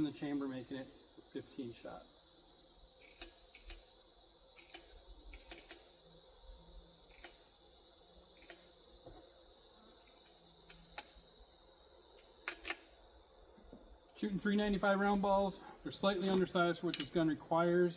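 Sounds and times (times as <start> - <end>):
crickets chirping: 0.0 - 17.9
faint clicks: 3.0 - 3.8.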